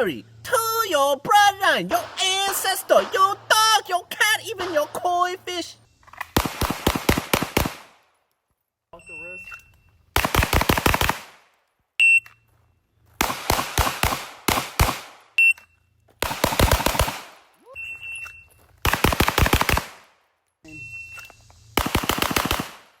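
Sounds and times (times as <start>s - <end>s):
rapid pistol shots: 2.0s - 3.9s, 6.2s - 8.1s, 10.2s - 11.5s, 13.2s - 15.4s, 16.2s - 17.5s, 18.8s - 20.2s, 21.8s - 23.0s
shot timer beep: 9.0s - 9.9s, 12.0s - 12.4s.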